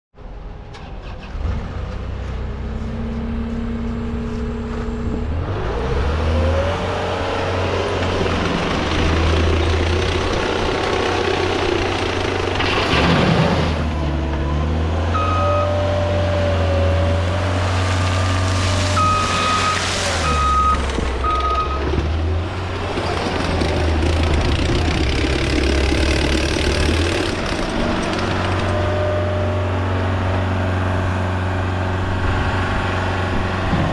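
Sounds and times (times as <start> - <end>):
diesel engine revving: 0.8 - 33.9
reversing alarm beeps: 15.2 - 15.8, 19.0 - 21.9.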